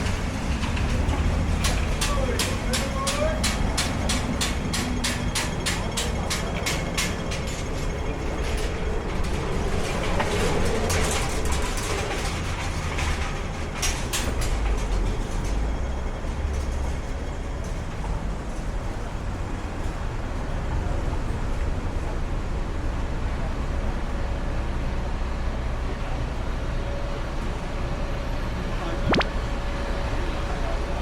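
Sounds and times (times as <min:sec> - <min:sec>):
sharp clacks: 0:00.0 - 0:15.9
vehicle low rumble: 0:00.0 - 0:31.0.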